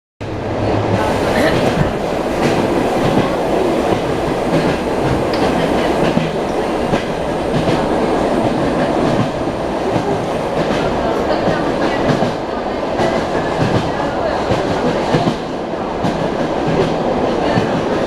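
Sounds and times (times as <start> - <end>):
train rumbling: 0.2 - 18.0
wheels clacking over rail joints: 1.0 - 12.4.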